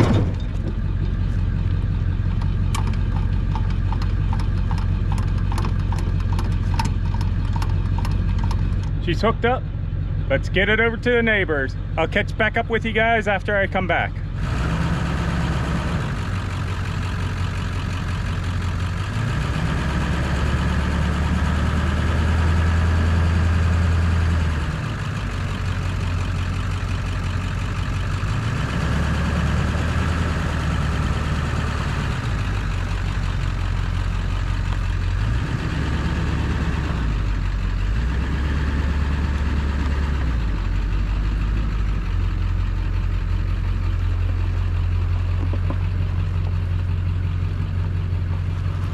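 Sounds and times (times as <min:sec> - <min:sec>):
heavy vehicle engine running: 0:00.0 - 0:48.9.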